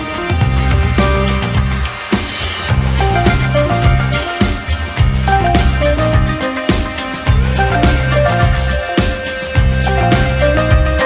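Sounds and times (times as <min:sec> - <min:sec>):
steady drum beat: 0:00.0 - 0:11.0
bass line: 0:00.2 - 0:02.0, 0:02.7 - 0:06.4, 0:07.3 - 0:09.0, 0:09.6 - 0:11.0.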